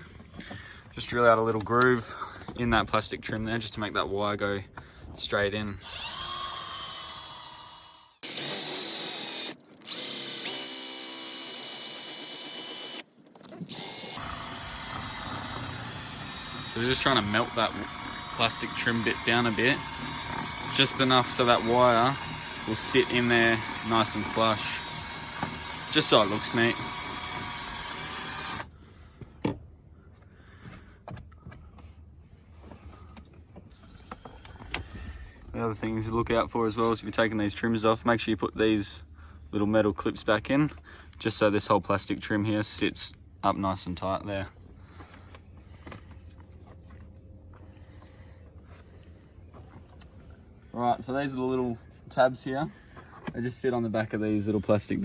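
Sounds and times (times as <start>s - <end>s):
electric drill whining into plastic: 5.6s - 28.8s.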